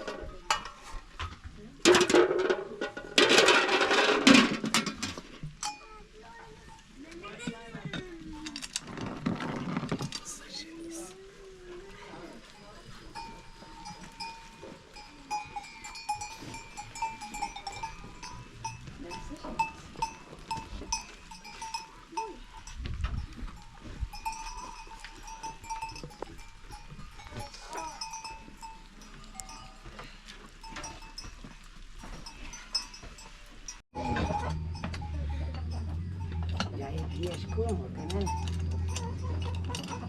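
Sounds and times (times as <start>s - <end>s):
livestock bells clinking: 3.2s - 4.5s, 5.6s - 7.5s, 11.9s - 40.0s.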